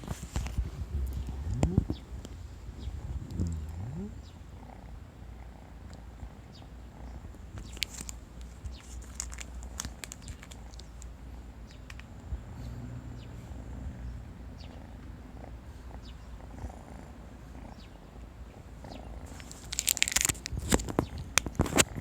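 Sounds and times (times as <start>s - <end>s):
kittens purring: 0.0s - 22.0s
scratchy clatter with clicks: 7.6s - 11.2s, 19.3s - 22.0s.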